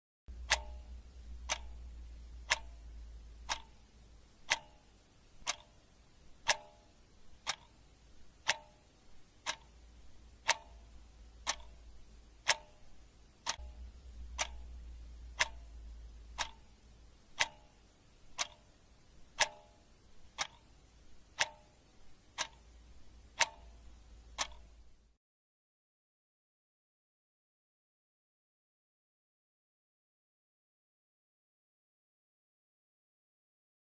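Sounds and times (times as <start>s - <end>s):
clock ticking: 0.3s - 25.1s.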